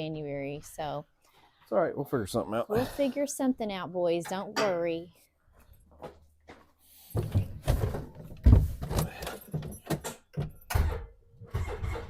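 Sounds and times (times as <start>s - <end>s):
irregular knocks and clunks: 6.0s - 12.0s.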